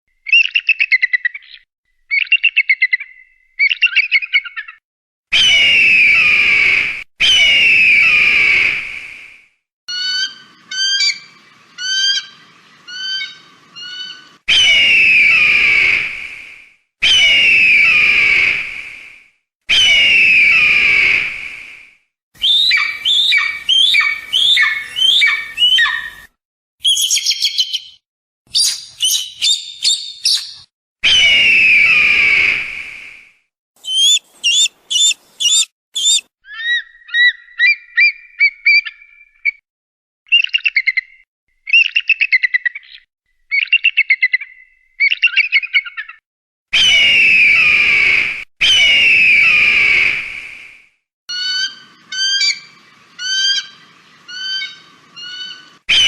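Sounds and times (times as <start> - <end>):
sharp whistled raptor notes: 5.3 - 36.3, 46.8 - 56.0
chattering raptor calls: 22.4 - 26.2, 33.8 - 37.4.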